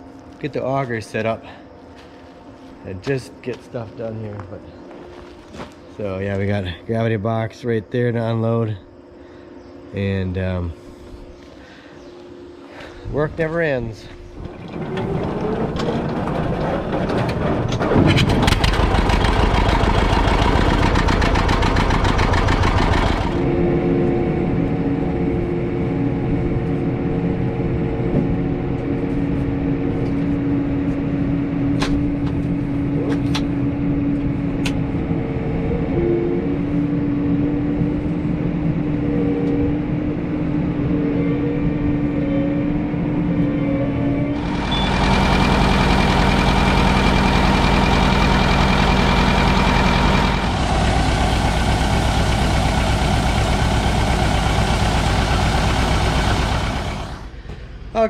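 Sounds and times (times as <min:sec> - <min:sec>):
tractor engine running: 0:13.2 - 0:35.9, 0:44.1 - 0:57.5.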